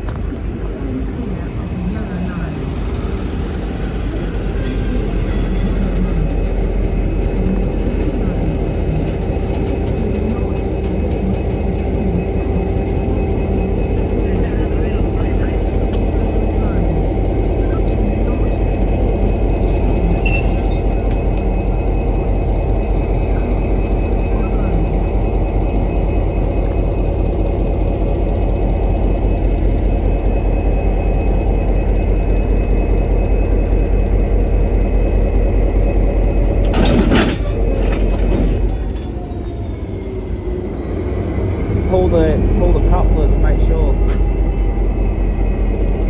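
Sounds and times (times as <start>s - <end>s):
locomotive low rumble: 0.0s - 46.0s
high-pitched squeal: 1.6s - 6.6s, 19.4s - 21.3s.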